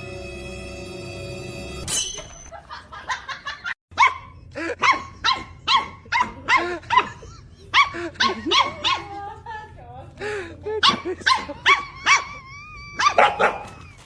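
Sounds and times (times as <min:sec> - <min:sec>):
dog barking: 0:04.0 - 0:09.2, 0:10.8 - 0:12.4, 0:13.0 - 0:13.8.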